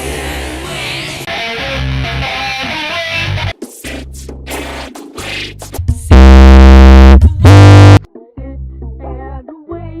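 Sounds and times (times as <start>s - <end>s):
children's cartoon song: 8.0s - 10.0s.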